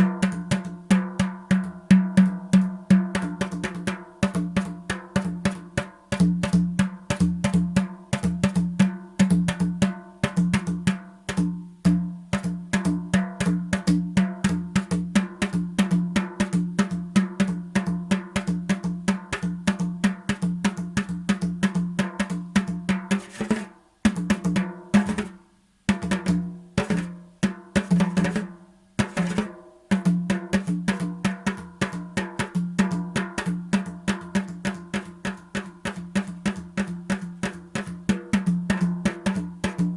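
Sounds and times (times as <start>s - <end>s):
fast drum strokes: 0.0s - 39.9s.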